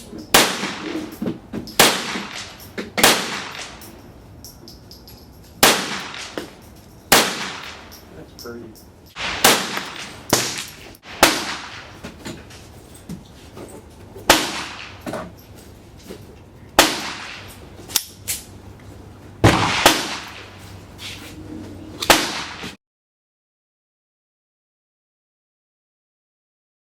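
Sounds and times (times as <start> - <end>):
gunshots with ringing echo: 0.3 - 3.9, 5.6 - 6.4, 7.1 - 8.1, 9.2 - 12.0, 14.3 - 15.0, 16.8 - 17.6, 19.4 - 20.6, 22.1 - 22.7
fainter gunshots: 9.2 - 12.0, 19.4 - 20.5, 22.0 - 22.8.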